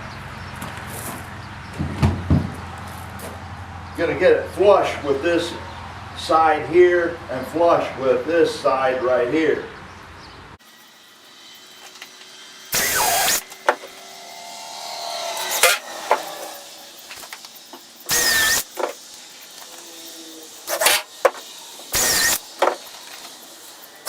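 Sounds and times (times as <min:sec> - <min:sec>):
power drill driving screws: 0:11.1 - 0:24.0.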